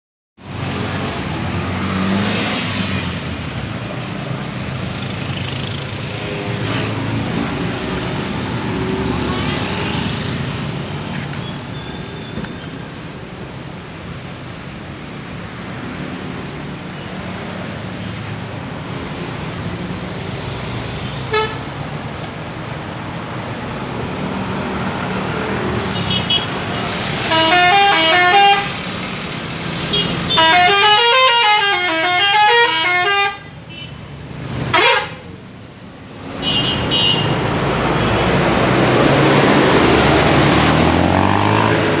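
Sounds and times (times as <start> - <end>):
bus engine rumble: 2.7 - 42.0
bus horn warbling tune: 21.3 - 21.7, 27.2 - 28.8, 29.9 - 34.0, 34.7 - 35.3.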